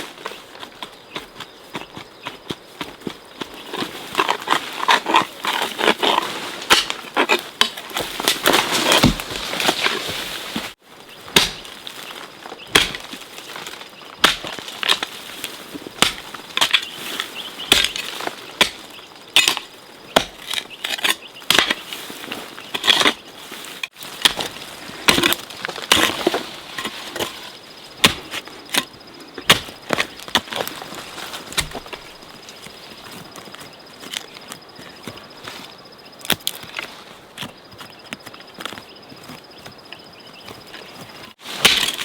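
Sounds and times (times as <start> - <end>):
sharp chopping strikes: 11.3 - 11.7.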